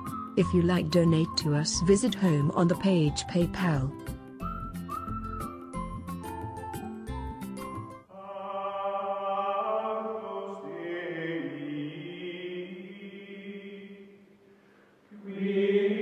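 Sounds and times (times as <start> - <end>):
held chant-like notes: 8.1 - 14.2, 15.1 - 16.0.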